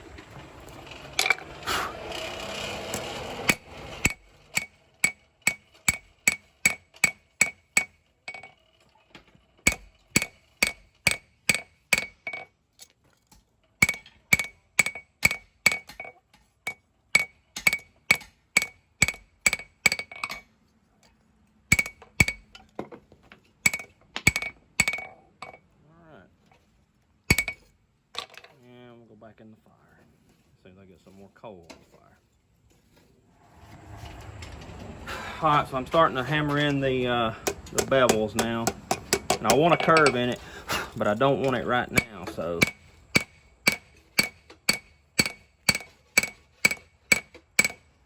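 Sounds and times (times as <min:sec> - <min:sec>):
hammer striking steel on anvil: 0:03.5 - 0:08.5, 0:09.7 - 0:12.5, 0:13.8 - 0:20.5, 0:21.7 - 0:22.7, 0:23.6 - 0:25.6, 0:27.3 - 0:27.7, 0:36.4 - 0:47.9.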